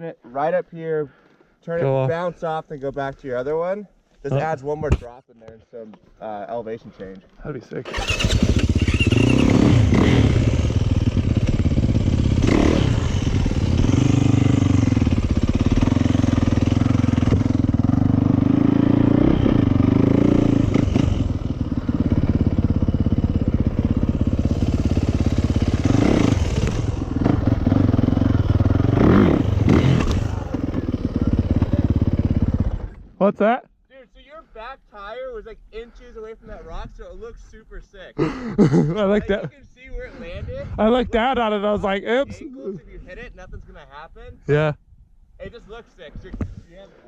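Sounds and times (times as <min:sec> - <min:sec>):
dirt bike engine revving: 0:07.9 - 0:33.0.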